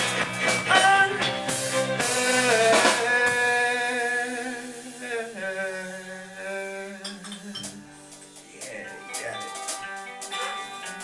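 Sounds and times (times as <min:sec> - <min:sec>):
drum hits: 0:00.0 - 0:03.8
live rock band playing: 0:00.0 - 0:11.0.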